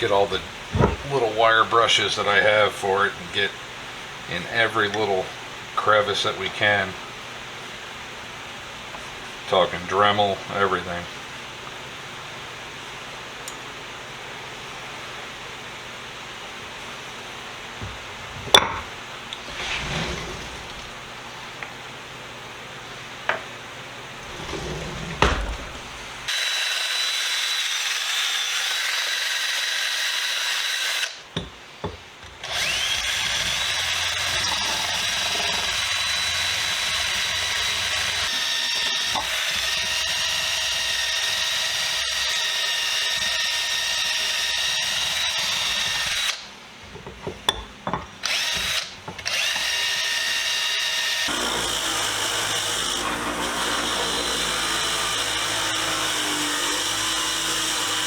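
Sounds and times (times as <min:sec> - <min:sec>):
rotary tool wire brush whine: 0:19.3 - 0:21.1, 0:24.2 - 0:31.2, 0:32.4 - 0:46.4, 0:48.3 - 0:58.0.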